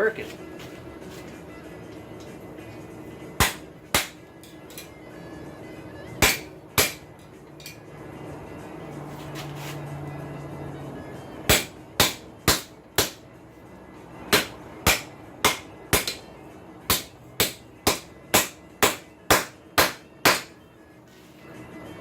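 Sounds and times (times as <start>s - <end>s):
hammer striking hot steel on anvil: 3.4s - 4.9s, 6.2s - 7.8s, 11.5s - 13.2s, 14.3s - 16.3s, 16.9s - 20.6s.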